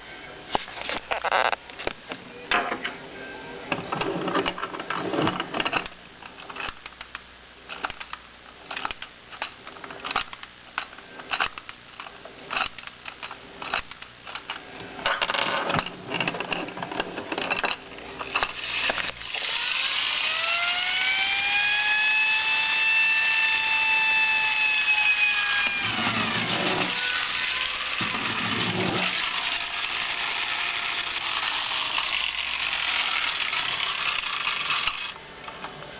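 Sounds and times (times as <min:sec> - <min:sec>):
clockwork toy clicks and rattles: 0:04.4 - 0:14.6, 0:25.8 - 0:35.2
mechanical siren wailing: 0:19.5 - 0:28.1.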